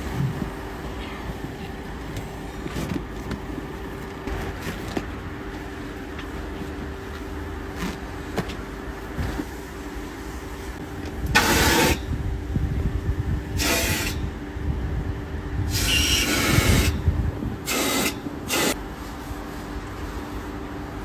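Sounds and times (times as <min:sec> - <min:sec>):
engine humming: 0:00.0 - 0:13.4.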